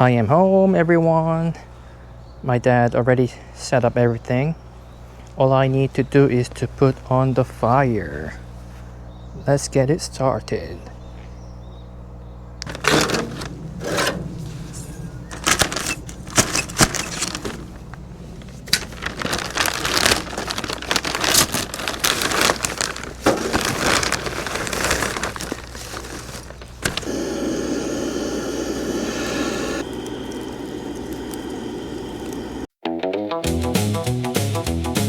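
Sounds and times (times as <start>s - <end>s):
barbecue fire crackling: 12.6s - 32.7s
steady rushing noise: 12.7s - 20.4s.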